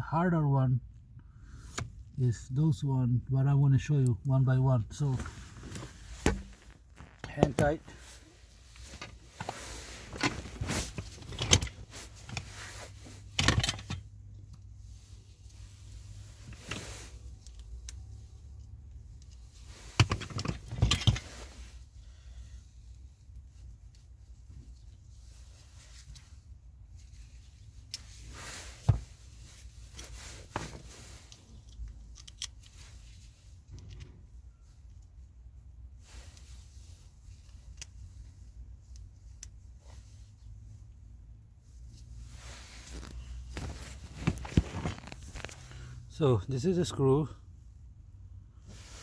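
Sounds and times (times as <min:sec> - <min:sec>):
rubbing and scraping: 0:05.1 - 0:13.4, 0:42.1 - 0:45.7.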